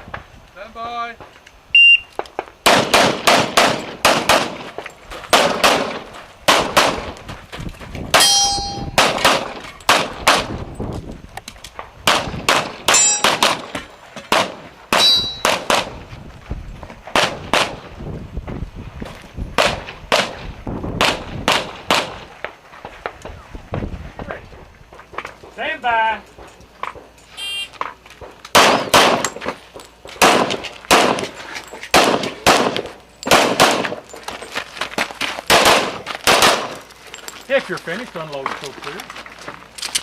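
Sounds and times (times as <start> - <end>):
rapid pistol fire: 2.6 - 4.7, 5.3 - 7.1, 9.0 - 10.6, 12.0 - 13.7, 14.3 - 14.6, 15.4 - 16.0, 17.2 - 17.8, 19.6 - 20.4, 21.0 - 22.3, 28.5 - 29.3, 30.2 - 31.2, 31.9 - 34.0, 35.5 - 36.8
steel targets ringing: 8.2 - 9.0, 12.9 - 13.6, 14.9 - 15.6.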